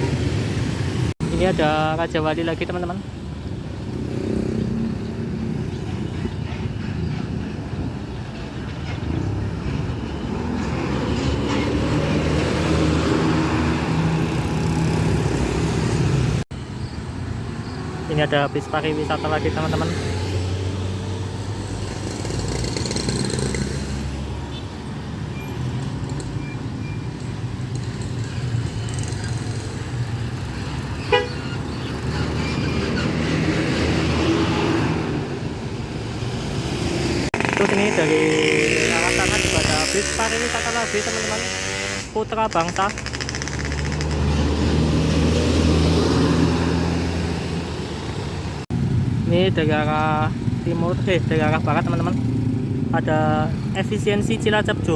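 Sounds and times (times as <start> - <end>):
road traffic: 0.0 - 54.9
vehicle horn toot: 31.0 - 31.6.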